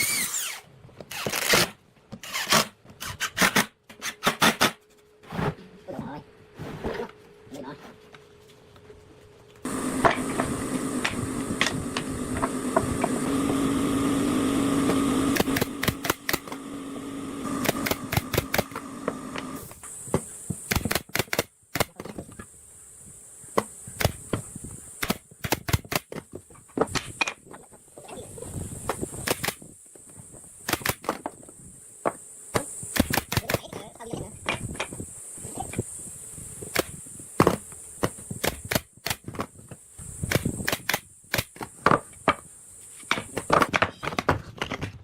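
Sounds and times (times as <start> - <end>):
power tool motor running: 9.6 - 19.9.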